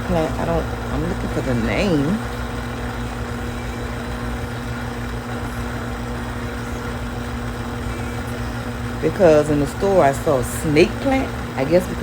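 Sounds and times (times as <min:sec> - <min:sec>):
motor humming: 0:00.0 - 0:12.0.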